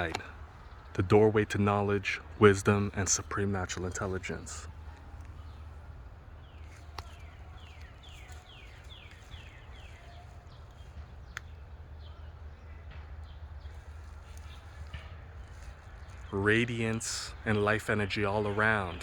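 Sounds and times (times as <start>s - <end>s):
faint bird chirps: 4.0s - 19.0s.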